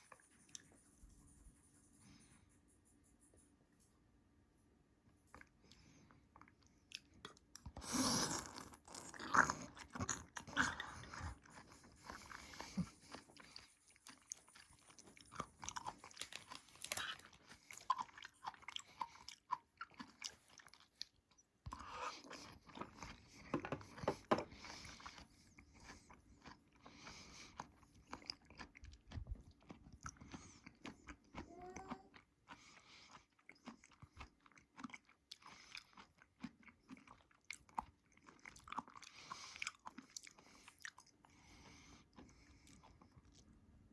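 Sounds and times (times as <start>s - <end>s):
crunching and chewing food: 5.2s - 43.9s.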